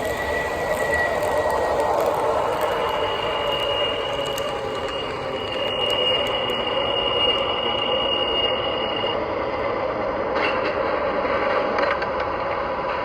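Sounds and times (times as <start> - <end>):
high steady whine: 0.0 - 9.8
model train rumbling on track: 0.0 - 13.0
subway running sounds: 0.0 - 13.0.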